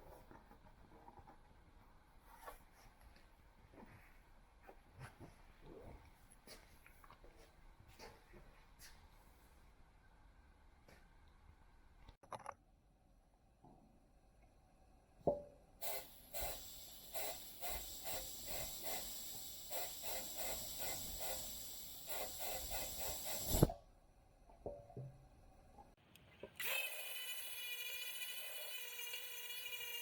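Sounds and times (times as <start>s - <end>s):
pressurised spray hissing: 15.8s - 23.7s.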